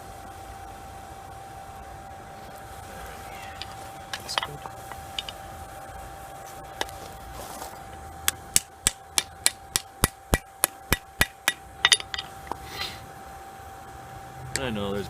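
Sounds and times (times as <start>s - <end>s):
hammer striking metal on anvil: 3.6s - 5.4s, 8.3s - 12.3s.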